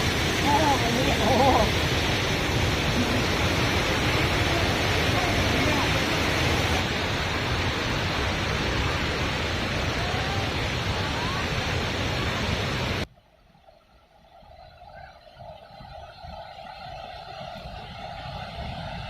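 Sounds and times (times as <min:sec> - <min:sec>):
waterfall rushing: 0:00.0 - 0:13.1.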